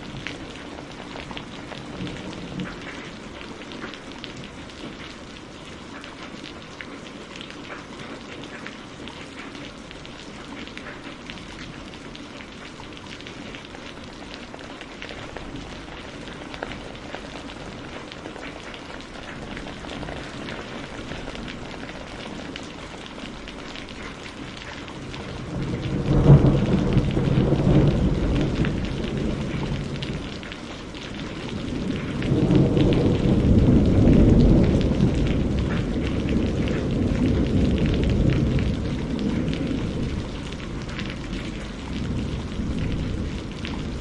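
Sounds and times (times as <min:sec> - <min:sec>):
steady rain falling: 0:00.0 - 0:44.0
thunder rumbling: 0:13.6 - 0:44.0.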